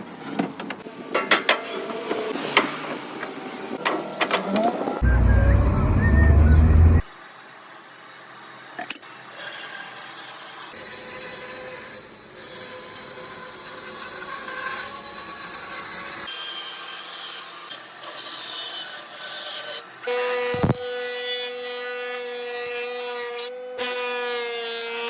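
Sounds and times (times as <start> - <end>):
humming tone with overtones: 5.0 - 7.0.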